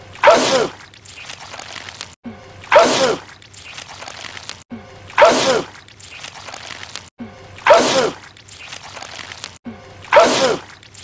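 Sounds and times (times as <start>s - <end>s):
man sneezing: 5.2s - 5.7s, 7.7s - 8.2s, 10.1s - 10.6s.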